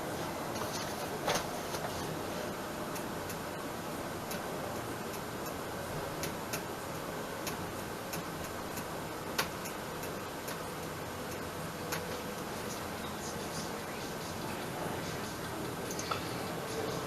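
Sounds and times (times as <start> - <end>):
steady hiss: 0.0 - 17.0.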